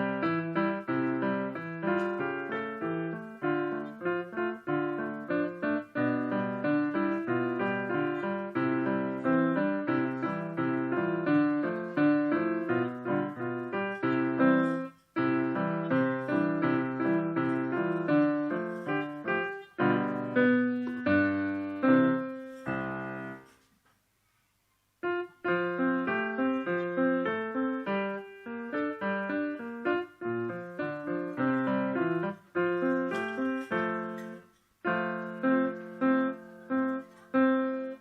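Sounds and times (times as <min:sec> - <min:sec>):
solo piano playing: 0:00.0 - 0:23.6, 0:25.0 - 0:38.0.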